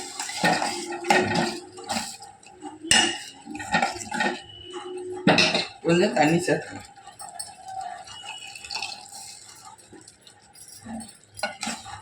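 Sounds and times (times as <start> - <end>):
metal spoon scraping a pot: 0.0 - 5.8, 10.8 - 12.0
spoon clinking on pot: 10.6 - 12.0.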